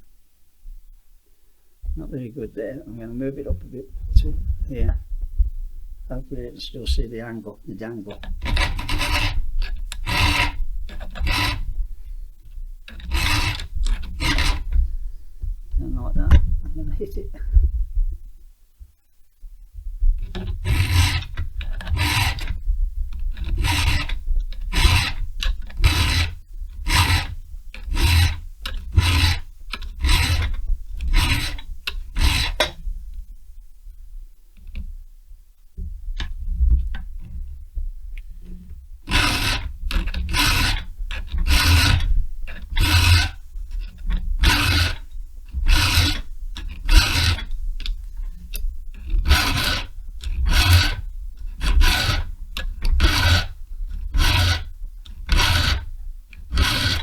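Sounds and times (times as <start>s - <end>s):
hand file rasping on chain: 8.1s - 11.7s, 12.9s - 14.8s, 20.2s - 22.6s, 23.2s - 32.8s, 39.0s - 57.0s.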